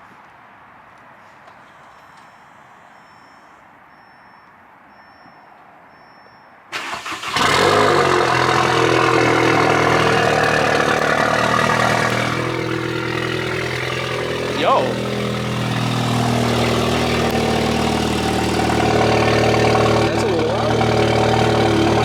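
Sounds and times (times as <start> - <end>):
car engine fast idle: 6.7 - 22.0
engine cranking on starter: 6.7 - 22.0.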